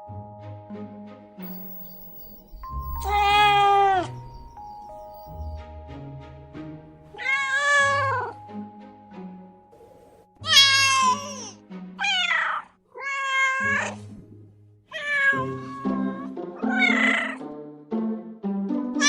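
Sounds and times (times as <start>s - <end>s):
background music with low notes: 0.0s - 12.9s, 13.6s - 19.0s
cat meowing: 2.6s - 4.2s, 7.1s - 8.4s, 10.4s - 14.0s, 14.9s - 17.4s.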